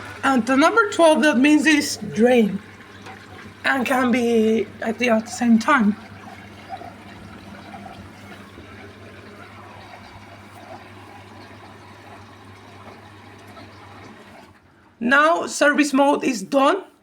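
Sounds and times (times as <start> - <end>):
water rushing: 0.0 - 16.7
drain pump humming: 0.0 - 16.8.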